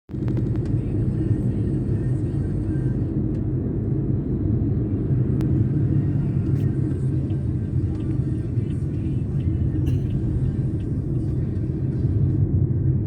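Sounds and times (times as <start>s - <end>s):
car interior road rumble: 0.1s - 13.0s.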